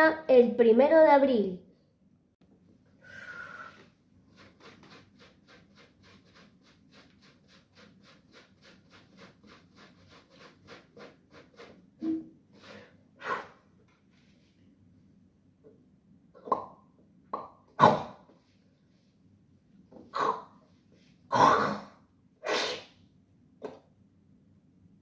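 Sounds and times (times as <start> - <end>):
child making breathy hiss: 3.0 - 3.9, 21.5 - 23.0.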